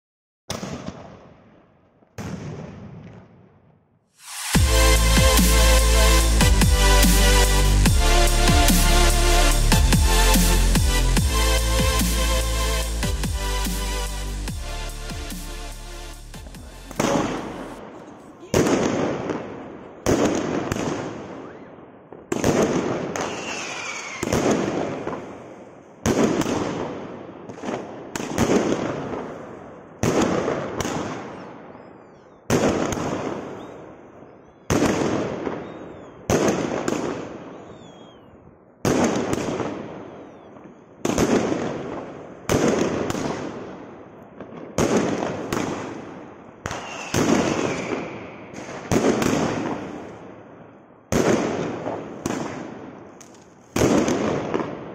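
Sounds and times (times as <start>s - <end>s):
firework bangs: 0.5s - 14.6s, 15.3s - 31.6s, 32.5s - 34.1s, 34.7s - 54.9s
firework crackle and hiss: 4.1s - 21.7s, 22.3s - 31.4s, 41.0s - 43.8s, 44.6s - 50.4s, 51.1s - 54.9s.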